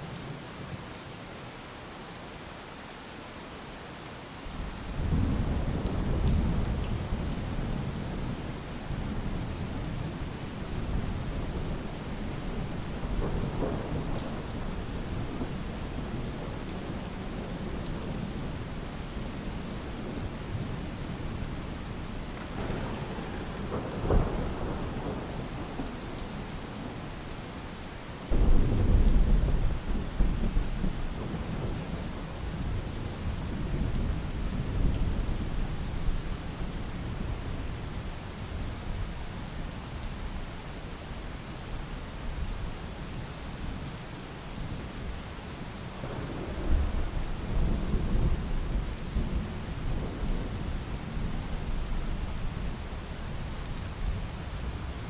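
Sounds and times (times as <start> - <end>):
steady rain falling: 0.0 - 55.0
thunder rumbling: 9.0 - 18.7, 22.3 - 26.4, 28.3 - 35.4.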